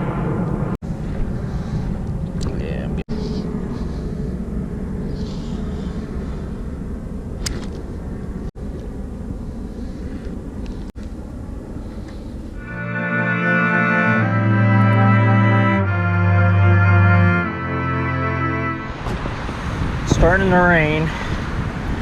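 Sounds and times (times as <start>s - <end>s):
low rumbling noise: 0.0s - 22.0s
organ-like chords music: 12.6s - 19.5s.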